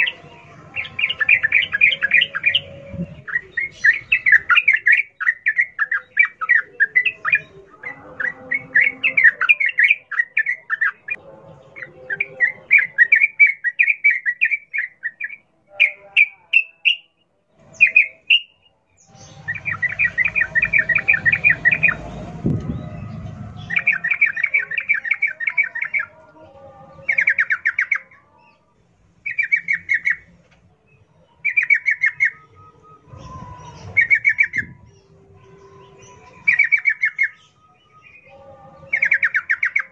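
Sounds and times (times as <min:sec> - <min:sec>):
bird chattering song: 0:00.0 - 0:26.3, 0:27.0 - 0:28.2, 0:29.2 - 0:30.3, 0:31.2 - 0:39.9
low rumble: 0:19.1 - 0:24.6.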